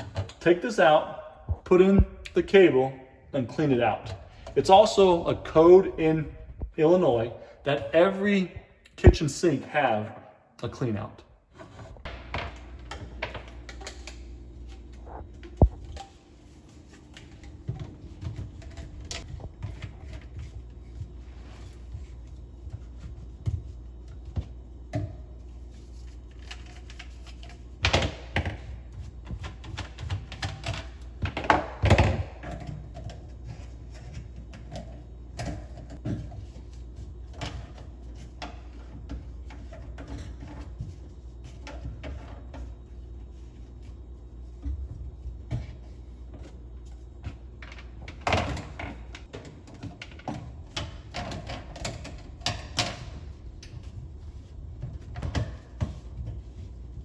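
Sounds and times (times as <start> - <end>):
plumbing tools clicking and knocking: 0.0 - 0.8, 26.4 - 42.8, 47.2 - 54.0
steady low hum: 0.0 - 57.0.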